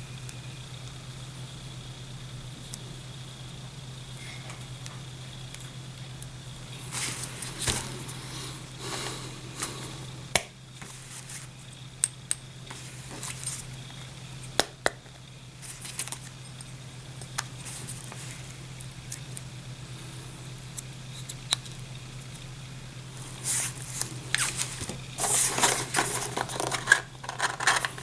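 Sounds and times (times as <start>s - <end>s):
steady low hum: 0.0s - 28.0s
camera handling clicks and rustles: 23.9s - 28.0s.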